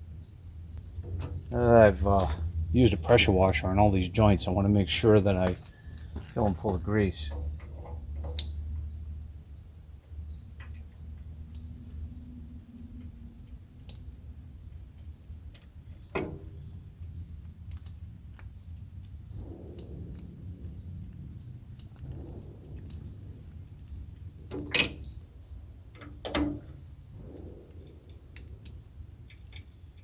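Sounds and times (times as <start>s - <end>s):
low rumble: 0.0s - 9.5s, 18.0s - 25.4s.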